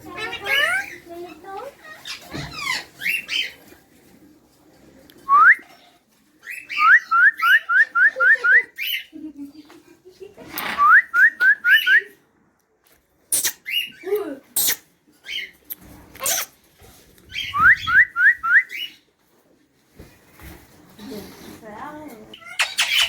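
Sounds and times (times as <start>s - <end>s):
parrot chirps: 13.3s - 15.6s, 16.2s - 16.6s, 22.3s - 23.0s
parrot whistling: 17.3s - 18.9s.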